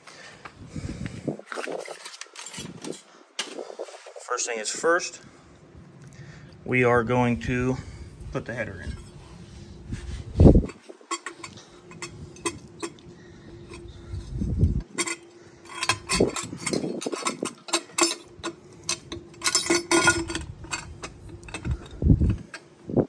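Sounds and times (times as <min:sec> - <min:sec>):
metal parts clinking and knocking: 0:01.5 - 0:03.6, 0:10.4 - 0:22.7
steady hum: 0:02.8 - 0:23.0.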